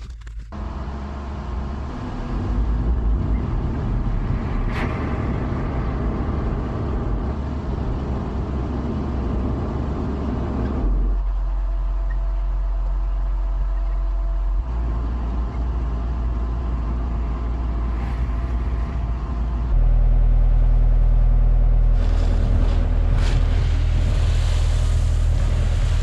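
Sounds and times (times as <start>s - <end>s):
diesel engine running: 0.0s - 26.0s
hiss: 23.4s - 26.0s.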